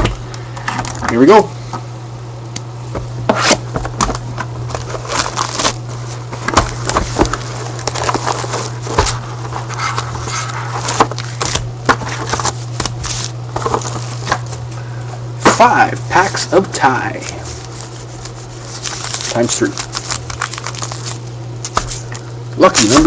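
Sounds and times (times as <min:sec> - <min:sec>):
steady low hum: 0:00.0 - 0:23.0
plastic wrap and cardboard crackling: 0:04.0 - 0:14.6, 0:17.1 - 0:23.0.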